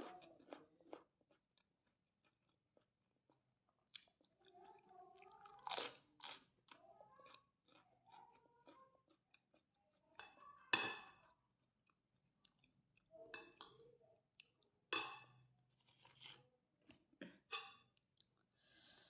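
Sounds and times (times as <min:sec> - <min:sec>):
person chewing food: 0:00.0 - 0:10.2, 0:11.3 - 0:19.0
crackers crunching: 0:05.2 - 0:06.6.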